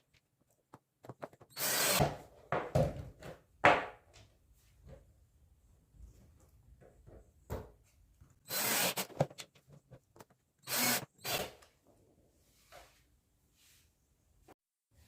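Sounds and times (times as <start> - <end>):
power drill running: 1.5 - 2.0, 8.5 - 9.2, 10.6 - 11.5.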